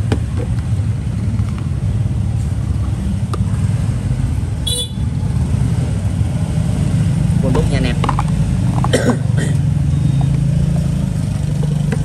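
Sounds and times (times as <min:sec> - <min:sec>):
road traffic rumble: 0:00.0 - 0:12.0
high-pitched horn toot: 0:04.7 - 0:05.0.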